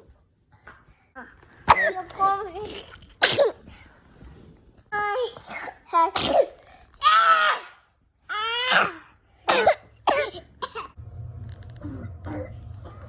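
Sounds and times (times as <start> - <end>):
young child coughing: 1.6 - 3.7, 5.5 - 6.6, 8.6 - 11.0.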